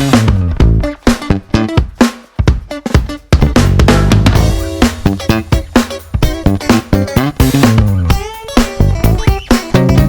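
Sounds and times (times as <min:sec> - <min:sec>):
upbeat music with drums and guitar: 0:00.0 - 0:10.0.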